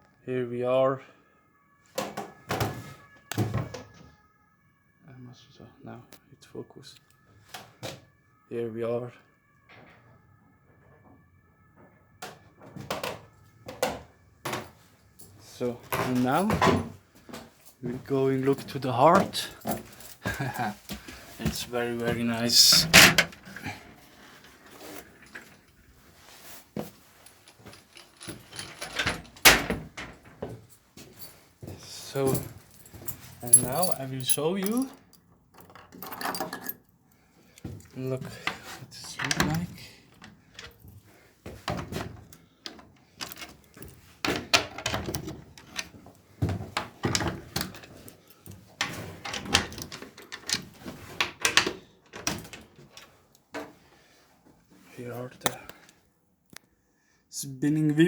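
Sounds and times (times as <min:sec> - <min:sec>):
knocks and clunks of handling: 0:15.9 - 0:17.5, 0:19.1 - 0:24.0, 0:37.6 - 0:53.8.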